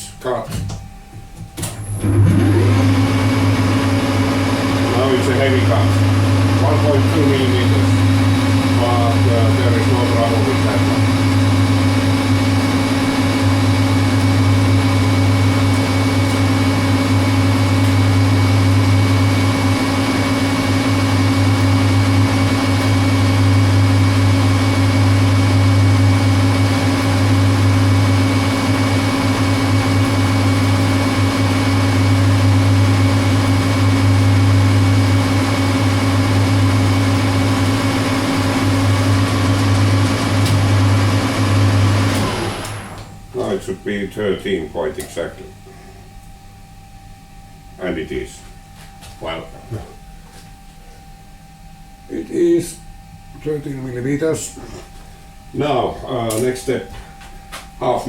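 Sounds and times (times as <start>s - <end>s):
metal lathe humming: 1.8s - 43.4s.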